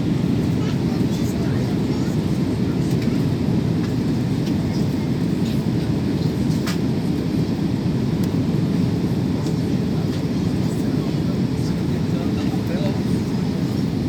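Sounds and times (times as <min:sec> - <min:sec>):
airplane cabin engine rumble: 0:00.0 - 0:14.0.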